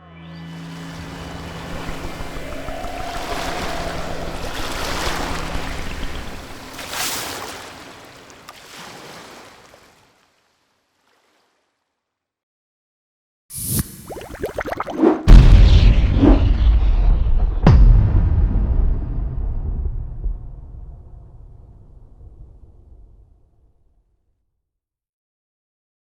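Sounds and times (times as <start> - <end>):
ocean surf hissing: 0.6 - 8.3.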